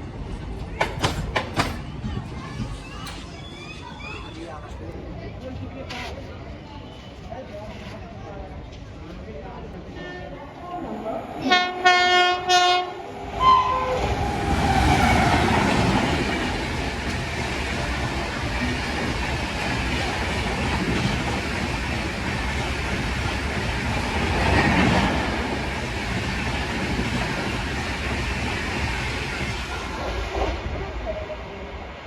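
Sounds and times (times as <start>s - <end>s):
train wheels rumbling on track: 0.0s - 6.1s, 7.6s - 32.0s
locomotive horn: 11.4s - 14.0s.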